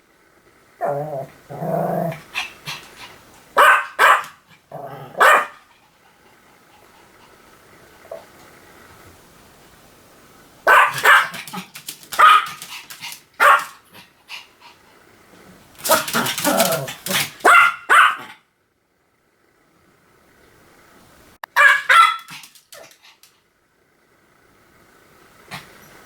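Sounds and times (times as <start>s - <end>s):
small dog barking: 3.6s - 5.7s, 10.6s - 13.8s, 15.8s - 18.4s, 21.4s - 22.9s.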